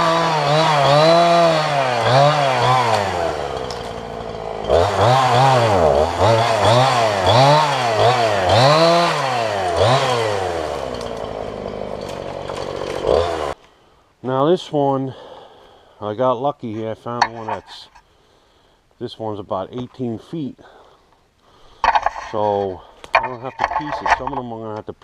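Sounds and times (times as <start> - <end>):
chainsaw revving: 0.0 - 13.6.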